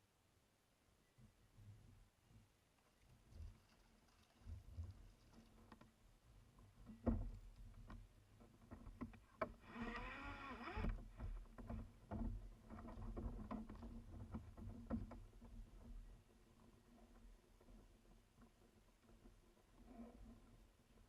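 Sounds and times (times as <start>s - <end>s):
paddle knocking against kayak hull: 6.9s - 8.0s, 10.7s - 16.0s.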